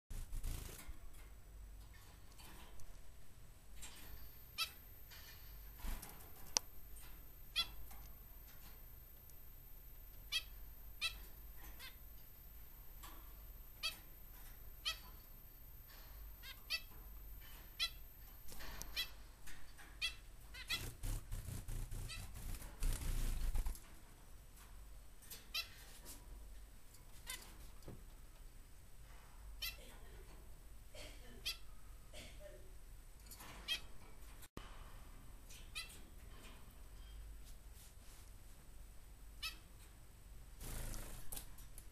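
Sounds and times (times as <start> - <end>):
faint finch chirps: 3.8 - 8.8, 10.1 - 12.3, 13.1 - 19.2, 19.8 - 23.7, 25.3 - 25.9, 29.6 - 30.0, 31.4 - 31.8, 33.6 - 34.0, 35.5 - 36.2, 39.4 - 39.8, 40.6 - 41.2.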